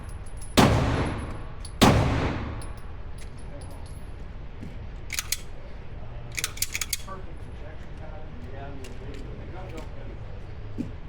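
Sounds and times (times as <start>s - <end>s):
rifle shots echoing: 0.6s - 2.8s.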